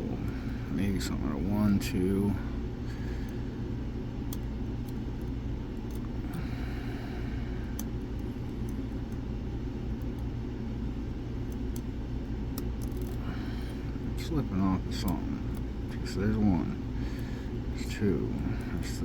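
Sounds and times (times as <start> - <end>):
low background rumble: 0.0 - 19.0
lock pick ticking on pins: 11.4 - 13.3.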